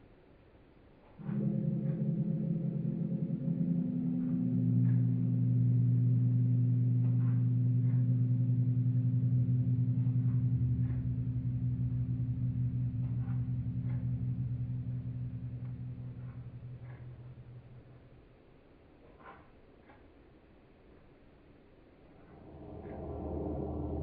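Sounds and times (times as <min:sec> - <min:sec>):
low ringing drone: 0:01.2 - 0:18.1, 0:22.2 - 0:24.0.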